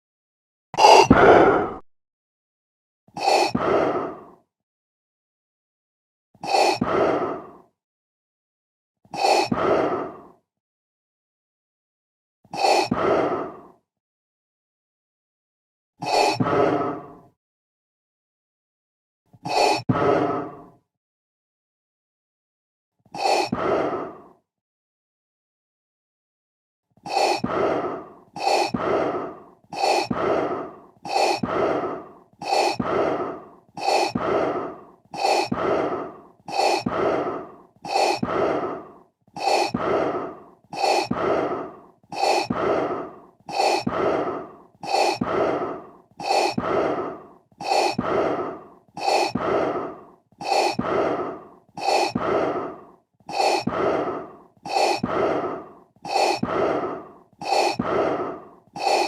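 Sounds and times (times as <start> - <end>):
mechanical respirator breathing: 27.1 - 59.0.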